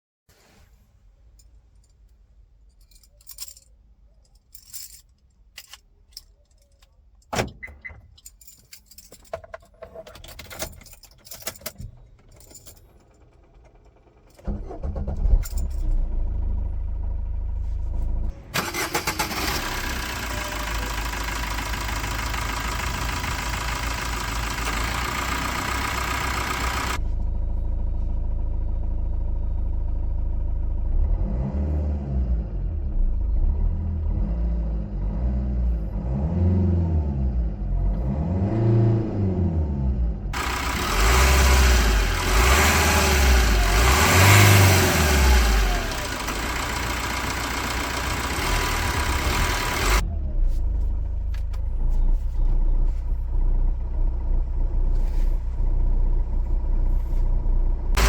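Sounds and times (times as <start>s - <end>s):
handling clicks and rattles: 1.4s - 14.4s
diesel engine starting and idling: 12.0s - 58.0s.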